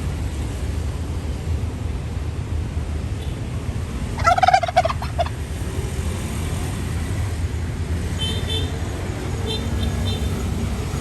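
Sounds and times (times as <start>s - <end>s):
turkey gobbling: 4.2s - 5.4s.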